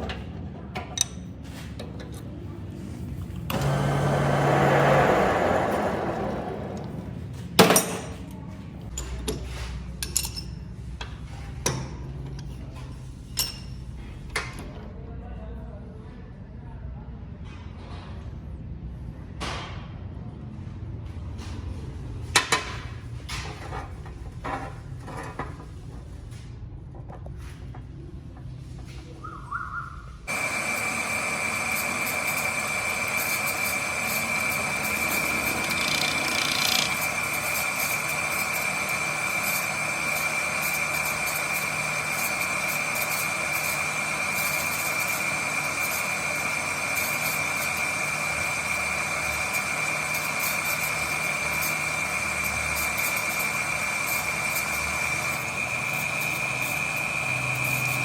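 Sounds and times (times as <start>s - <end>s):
machine high whine: 3.5s - 7.4s, 30.3s - 58.0s.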